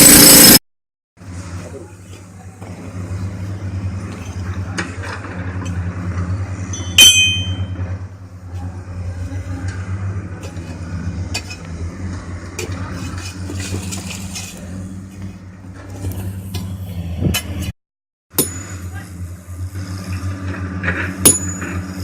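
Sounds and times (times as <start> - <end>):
heavy machine engine running: 0.0 - 0.6, 1.2 - 17.7, 18.4 - 22.0
ringing metallic clink: 6.7 - 7.8, 21.2 - 21.6.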